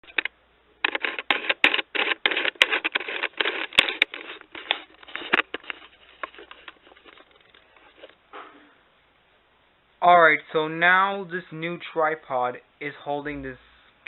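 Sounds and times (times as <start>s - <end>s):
camera handling clatter and rustling: 0.0s - 8.2s.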